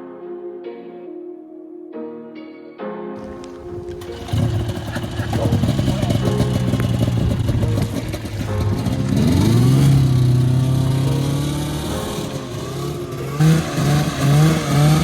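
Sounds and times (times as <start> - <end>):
snowmobile engine revving: 3.2 - 15.0.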